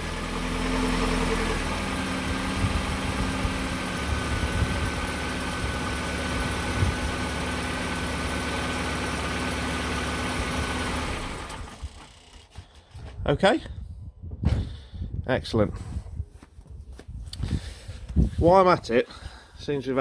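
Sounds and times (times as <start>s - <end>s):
car engine idling: 0.0s - 13.0s.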